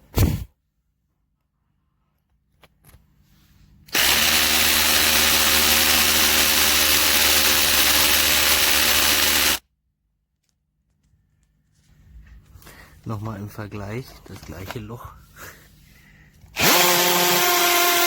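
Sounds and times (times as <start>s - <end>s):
cordless drill drilling: 3.9s - 9.6s, 16.6s - 18.0s.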